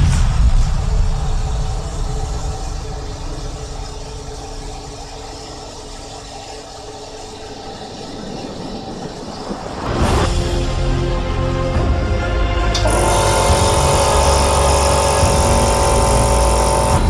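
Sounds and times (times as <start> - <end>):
machinery humming: 0.0 - 17.0
rising sweep: 0.0 - 17.0.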